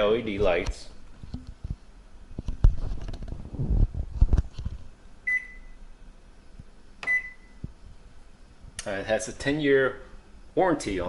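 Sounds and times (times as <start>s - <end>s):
microwave control panel beep: 5.2s - 5.8s, 7.0s - 7.6s.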